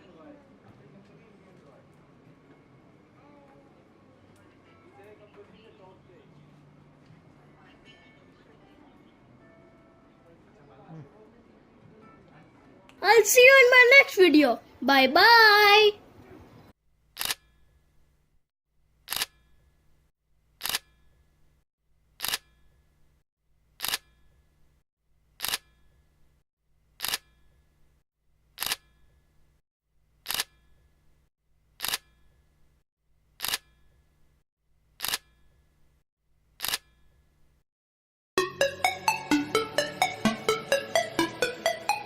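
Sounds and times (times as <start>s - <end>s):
camera shutter click: 17.2s - 17.5s, 19.1s - 19.4s, 20.6s - 20.9s, 22.2s - 22.4s, 23.8s - 24.1s, 25.4s - 25.6s, 27.0s - 27.2s, 28.6s - 28.8s, 30.3s - 30.5s, 31.8s - 32.0s, 33.4s - 33.7s, 35.0s - 35.3s, 36.6s - 36.9s.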